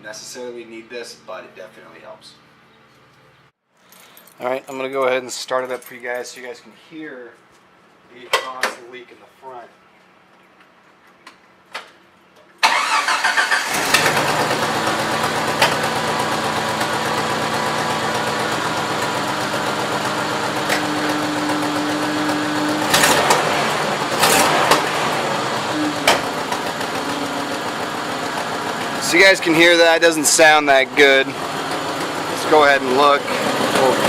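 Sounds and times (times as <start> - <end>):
engine starter cranking: 12.6 - 18.0, 18.6 - 34.0
engine idling: 12.7 - 34.0.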